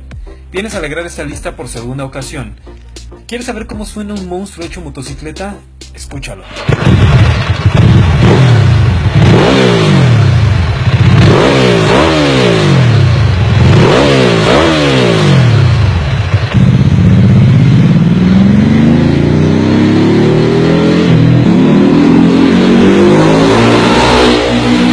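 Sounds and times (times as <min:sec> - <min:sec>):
motorcycle engine revving: 0:06.5 - 0:24.9.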